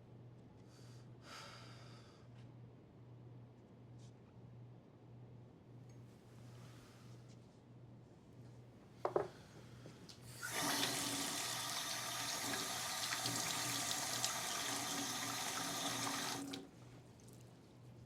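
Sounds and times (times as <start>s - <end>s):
water running into a sink: 10.4s - 16.8s.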